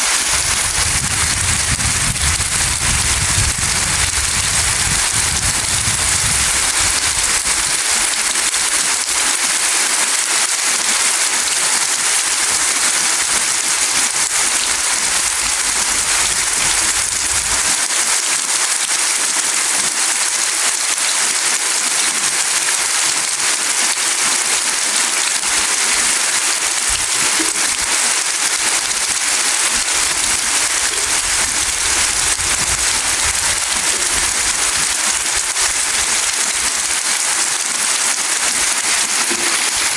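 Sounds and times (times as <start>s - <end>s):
rain pattering on surfaces: 0.0s - 39.9s.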